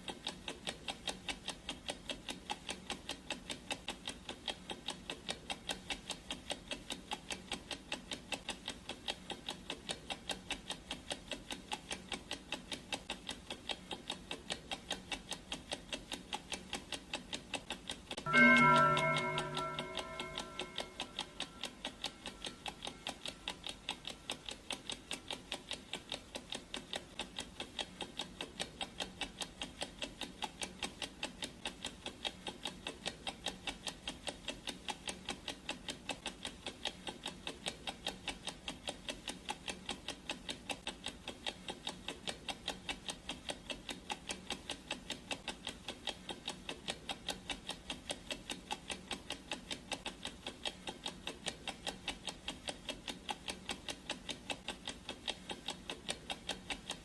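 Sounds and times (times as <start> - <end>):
clock ticking: 0.0 - 57.0
gong ringing: 18.3 - 21.6.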